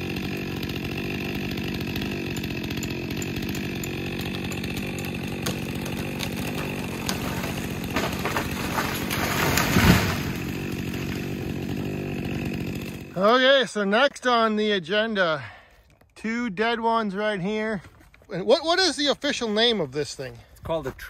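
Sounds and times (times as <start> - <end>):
chainsaw running at high speed: 0.0 - 13.4.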